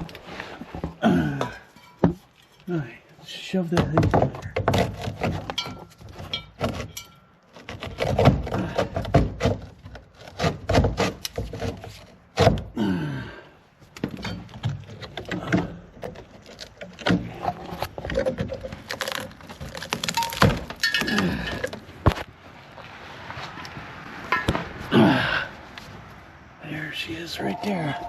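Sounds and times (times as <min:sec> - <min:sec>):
knocking clattering and scraping: 0:00.0 - 0:02.7, 0:03.6 - 0:12.8, 0:13.8 - 0:24.9
short falling squeak: 0:27.4 - 0:28.0.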